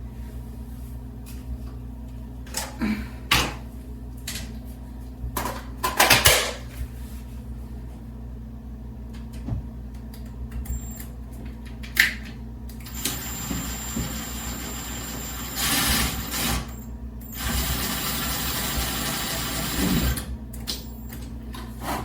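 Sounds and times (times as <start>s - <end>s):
power drill whining: 12.9s - 20.2s.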